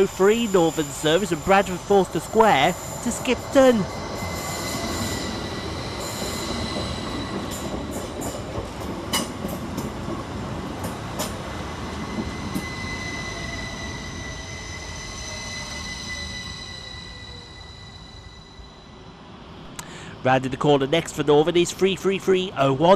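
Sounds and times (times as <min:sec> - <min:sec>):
train wheels squealing: 0:00.0 - 0:09.6, 0:10.8 - 0:19.6
train rolling rumble: 0:00.0 - 0:22.9
wheels clicking on track: 0:06.0 - 0:11.5.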